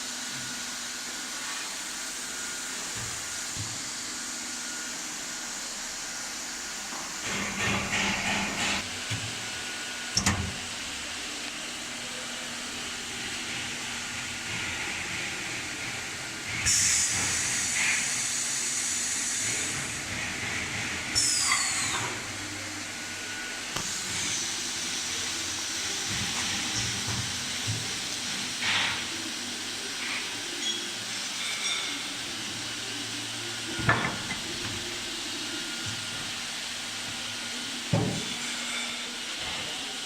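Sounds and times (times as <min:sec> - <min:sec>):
steady machine hiss: 0:00.0 - 0:40.0
loud high-pitched hiss: 0:16.6 - 0:19.9.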